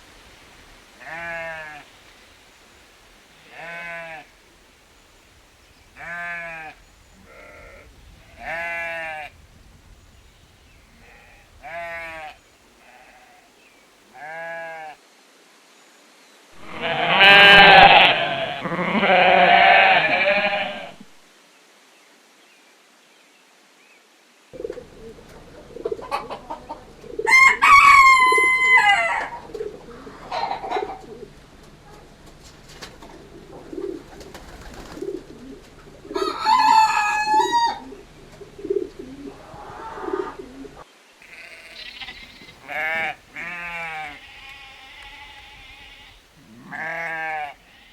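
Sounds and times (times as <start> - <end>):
goat bleating: 16.6 - 21.0, 41.2 - 47.9
hens clucking: 24.6 - 40.8
rooster crowing: 26.0 - 29.5, 36.1 - 38.0.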